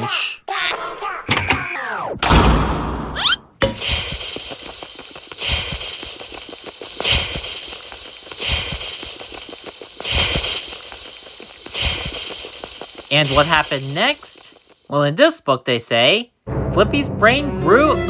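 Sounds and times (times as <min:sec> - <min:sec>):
hissing crackling sound effect: 0:03.6 - 0:15.0.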